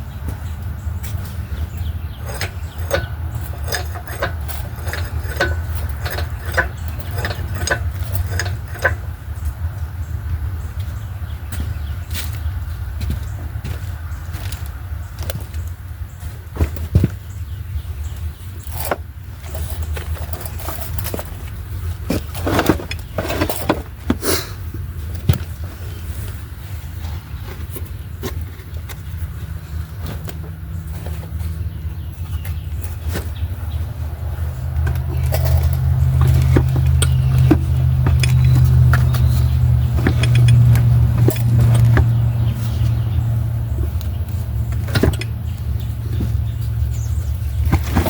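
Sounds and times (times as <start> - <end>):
metal tools clanking: 1.2 - 9.4, 16.6 - 26.4, 27.0 - 48.0
steady low rumble: 28.4 - 48.0
sharp metallic clicks and taps: 34.7 - 42.2.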